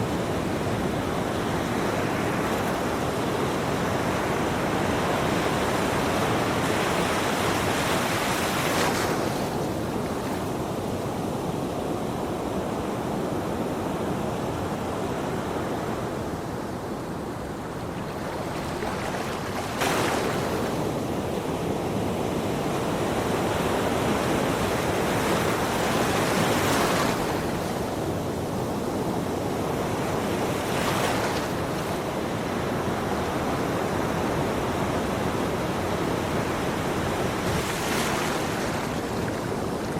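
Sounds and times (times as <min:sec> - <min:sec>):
ocean surf breaking: 0:17.3 - 0:28.8, 0:29.6 - 0:39.9.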